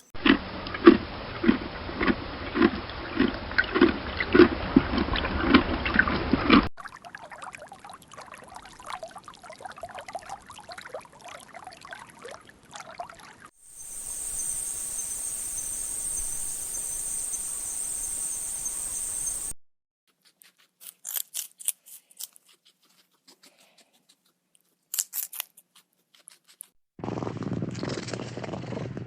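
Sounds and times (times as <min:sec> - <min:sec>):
high-pitched insect drone: 0:13.7 - 0:19.5.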